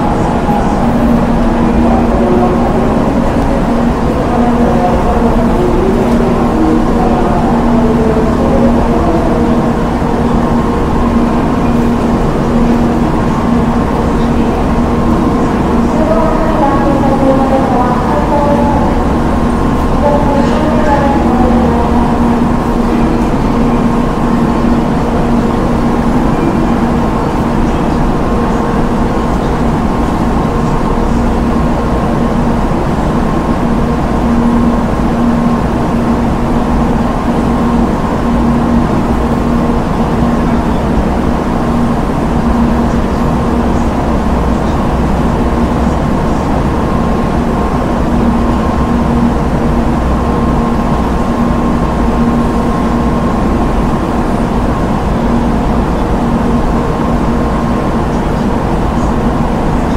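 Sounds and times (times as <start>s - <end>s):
train engine idling drone: 0.0s - 59.9s.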